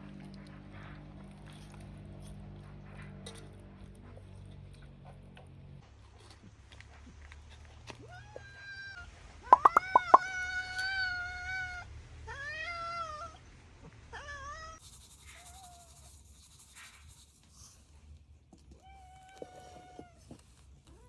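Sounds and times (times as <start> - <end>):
sharp clicks: 9.6 - 10.2.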